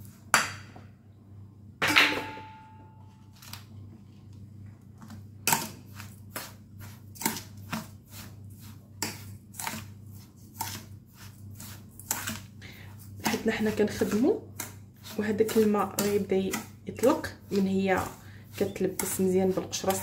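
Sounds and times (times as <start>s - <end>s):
sharp taps and scrapes in bowl: 5.5s - 20.0s.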